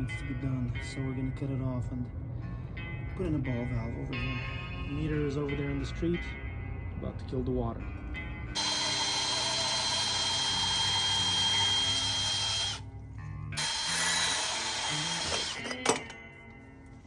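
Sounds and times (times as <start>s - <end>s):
power tool whining: 8.6s - 12.8s, 13.6s - 16.2s.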